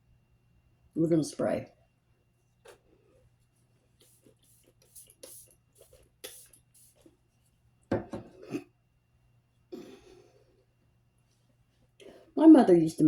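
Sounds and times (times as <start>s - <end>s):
spray bottle hissing spritzes: 4.0s - 7.0s.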